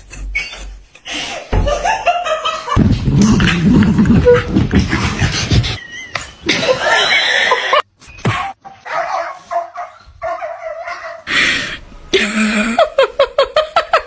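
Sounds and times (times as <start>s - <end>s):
dog whining: 8.1s - 11.3s
dog yelping: 8.2s - 11.4s
dog barking: 8.3s - 11.3s.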